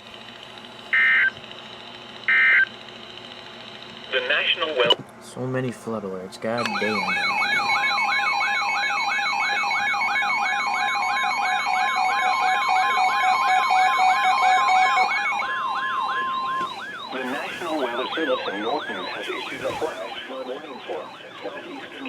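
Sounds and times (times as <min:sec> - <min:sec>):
steady warning alarm tone: 0:00.9 - 0:01.4, 0:02.3 - 0:02.7, 0:06.6 - 0:22.0
fast siren-like wail: 0:06.6 - 0:22.0
pulsing beeps: 0:06.6 - 0:22.0.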